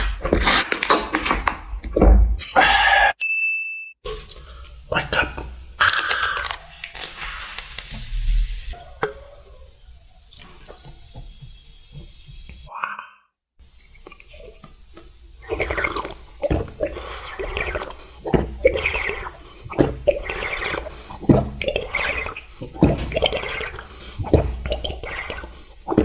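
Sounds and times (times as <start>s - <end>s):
wet squishy chewing: 4.1s - 8.0s, 14.0s - 26.0s.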